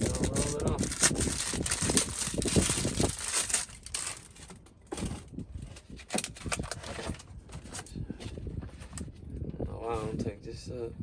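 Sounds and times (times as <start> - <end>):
sound-deadening mat crinkling: 0.0 - 7.9.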